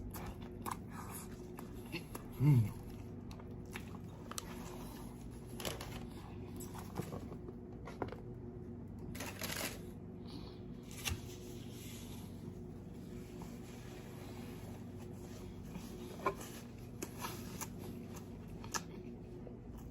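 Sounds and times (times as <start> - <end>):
person chewing food: 0.0 - 6.9, 14.7 - 19.9
steady low hum: 0.0 - 19.9.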